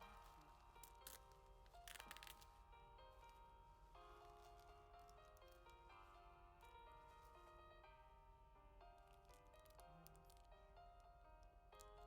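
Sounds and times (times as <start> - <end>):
chiming chord music: 0.0 - 8.8.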